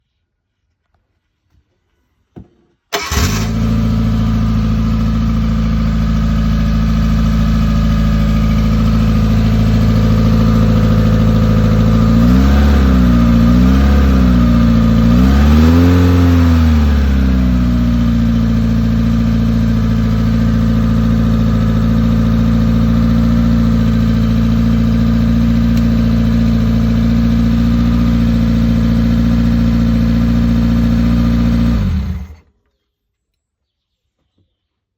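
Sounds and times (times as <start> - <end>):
fire pump engine revving: 2.9 - 32.4.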